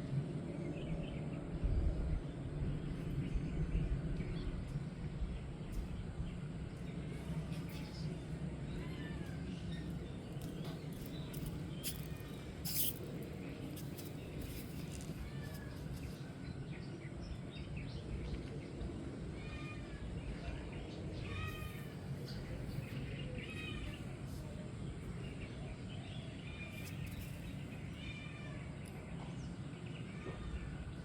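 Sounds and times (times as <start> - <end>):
low background noise: 0.0 - 31.0.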